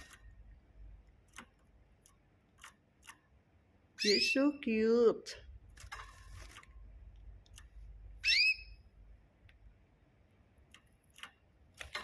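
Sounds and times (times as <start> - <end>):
small bird chirp: 4.0 - 4.6, 8.2 - 8.9.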